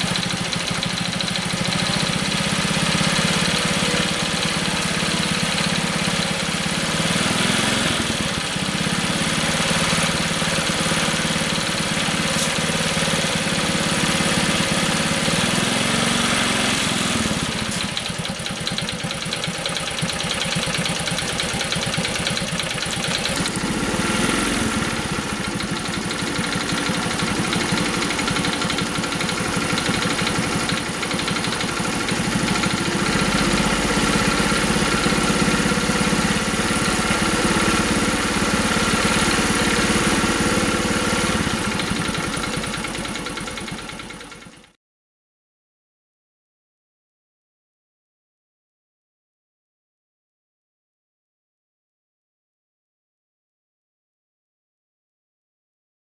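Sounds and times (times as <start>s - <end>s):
motorcycle engine idling: 0.0s - 44.8s.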